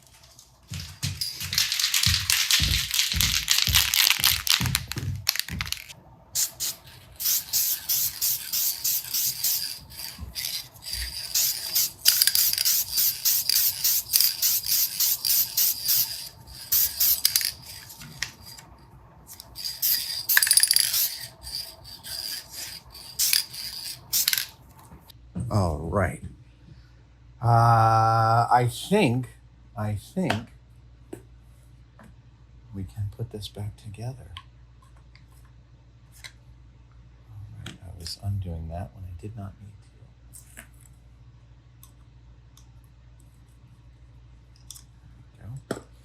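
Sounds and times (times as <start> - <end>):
short hissing spray strokes: 6.4 - 24.6.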